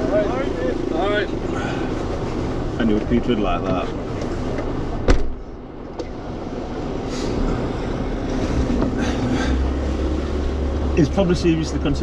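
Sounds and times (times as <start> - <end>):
vehicle engine rumble: 0.0 - 12.0
sharp thump: 5.1 - 5.4.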